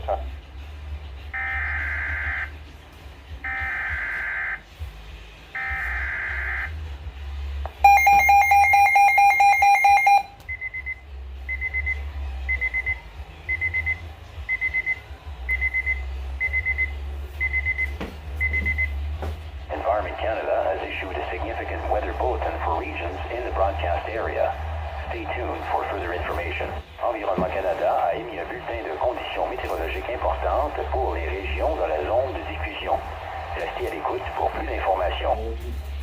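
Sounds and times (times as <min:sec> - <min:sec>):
short high beeps: 0:07.8 - 0:11.0.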